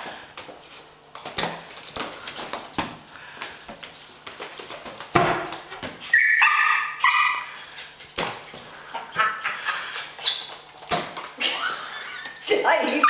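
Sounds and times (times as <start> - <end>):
puppy yipping and whining: 6.0 - 7.4, 9.2 - 10.6, 12.4 - 13.0.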